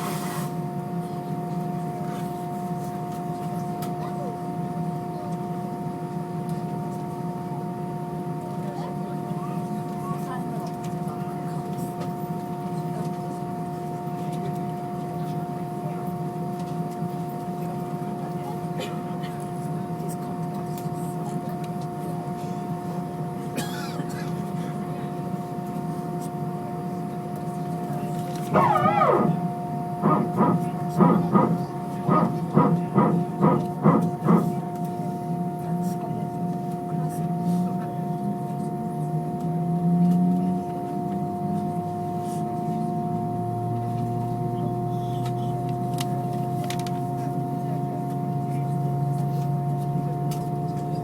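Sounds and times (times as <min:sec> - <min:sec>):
airplane cabin noise: 0:00.0 - 0:51.0
airplane cabin rumble: 0:26.7 - 0:39.4
engines whining: 0:28.2 - 0:34.7
low hum: 0:28.4 - 0:35.8.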